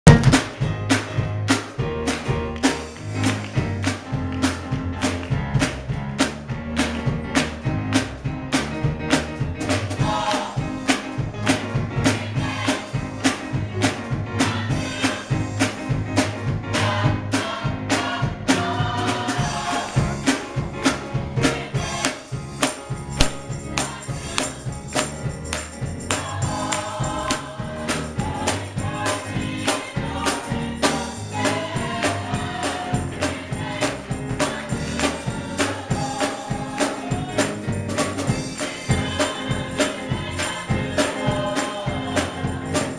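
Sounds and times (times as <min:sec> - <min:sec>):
bass: 0:00.0 - 0:42.9
tambourine beat: 0:00.0 - 0:42.9
choir singing: 0:10.0 - 0:11.0, 0:12.0 - 0:15.5, 0:16.7 - 0:20.4, 0:21.4 - 0:22.4, 0:23.2 - 0:25.2, 0:25.9 - 0:42.9
band playing: 0:20.1 - 0:29.8.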